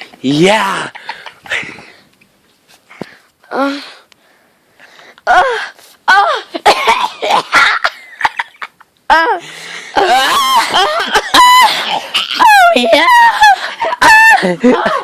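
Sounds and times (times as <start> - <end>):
person moaning and squealing: 5.3 - 6.5, 9.1 - 15.0.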